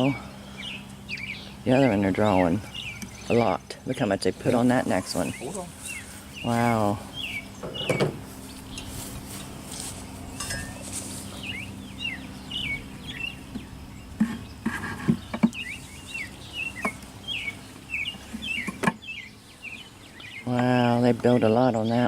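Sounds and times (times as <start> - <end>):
bird chirping: 0.0 - 22.0
honeybees humming: 0.0 - 22.0
wooden hive frames knocking: 7.6 - 8.3.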